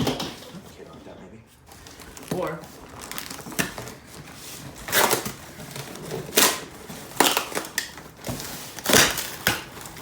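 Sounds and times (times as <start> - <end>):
packaging crunching and ripping: 1.7 - 4.1, 4.7 - 10.0.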